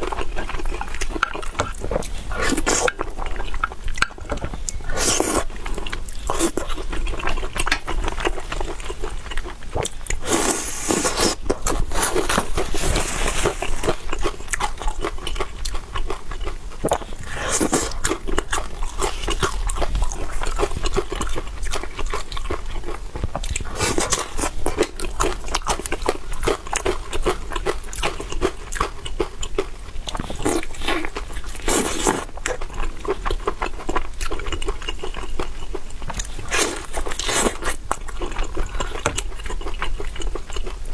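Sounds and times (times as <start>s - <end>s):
wet chewing: 0.0s - 40.9s
biting or slurping: 4.9s - 15.8s, 16.8s - 22.2s, 30.1s - 32.8s, 36.2s - 39.1s.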